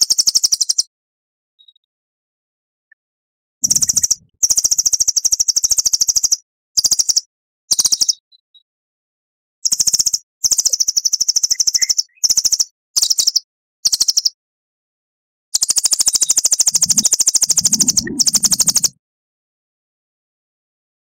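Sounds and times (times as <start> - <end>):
songbird high-pitched trills: 10.6 - 13.4
low rumble: 16.8 - 18.9.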